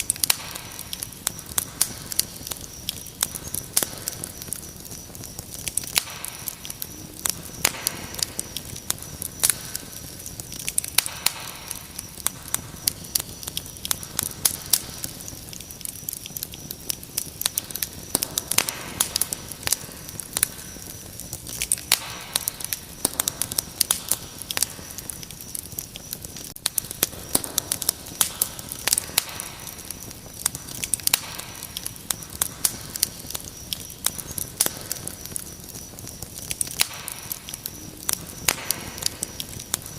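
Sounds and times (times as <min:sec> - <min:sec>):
crickets chirping: 0:00.0 - 0:39.9
wood fire crackling and popping: 0:00.0 - 0:39.9.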